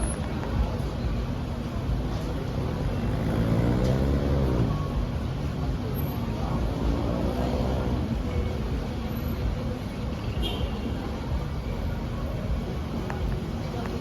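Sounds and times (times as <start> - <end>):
road traffic rumble: 0.0 - 14.0
vehicle passing by: 3.0 - 4.8.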